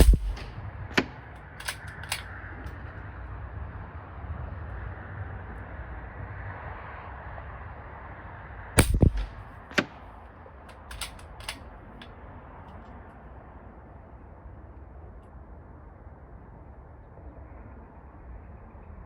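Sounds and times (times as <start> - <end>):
air rifle shot: 0.0 - 2.3, 8.8 - 10.0
light clicks: 0.0 - 2.8, 10.7 - 12.1
sharp mechanical click: 0.0 - 2.8, 8.8 - 10.0, 10.7 - 11.7.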